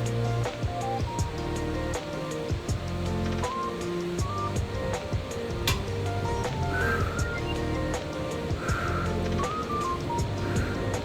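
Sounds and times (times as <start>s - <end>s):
kick drum: 0.0s - 3.0s, 4.2s - 9.0s, 10.0s - 11.0s
hi-hat: 0.0s - 11.0s
sustained melodic notes: 0.0s - 11.0s.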